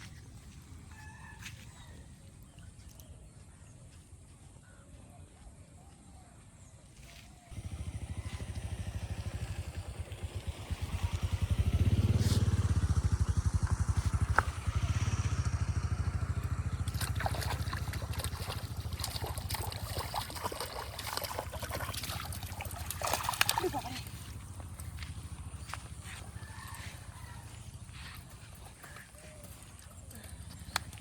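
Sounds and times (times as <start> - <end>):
engine running with rapid thud: 7.5 - 19.8, 24.1 - 28.6
crackling or splashing noises: 16.0 - 25.9.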